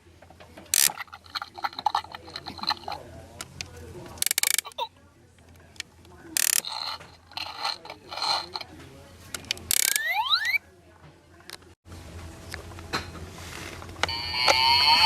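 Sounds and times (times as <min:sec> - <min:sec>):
plastic clicking and ratcheting: 0:00.7 - 0:04.8, 0:05.4 - 0:08.6, 0:09.4 - 0:10.6
toy sound effects from speaker: 0:04.2 - 0:04.9, 0:09.7 - 0:10.6, 0:14.1 - 0:15.0.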